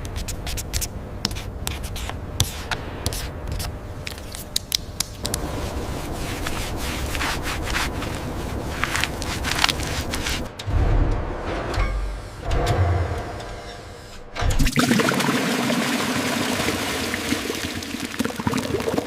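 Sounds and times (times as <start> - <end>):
rubbing and scraping: 5.2 - 12.8.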